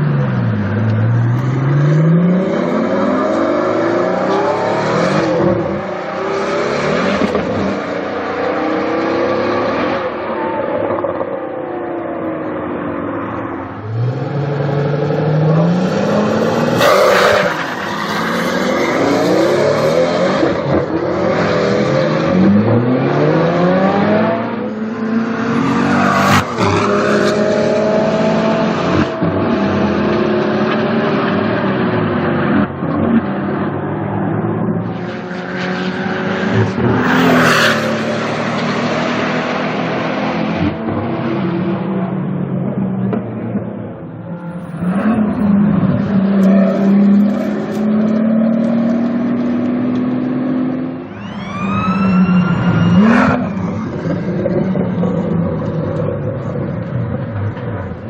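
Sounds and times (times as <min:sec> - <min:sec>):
car engine accelerating hard: 0:12.3 - 0:58.0.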